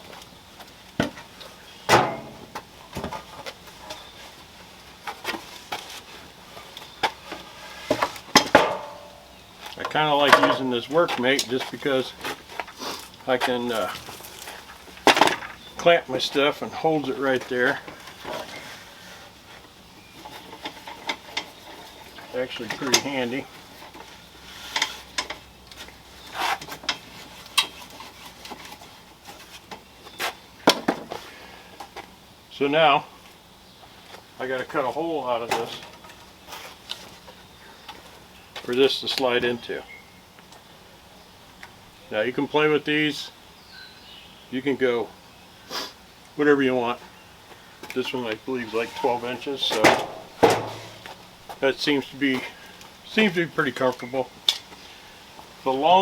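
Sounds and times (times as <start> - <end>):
wooden board scraping: 49.7 - 51.2.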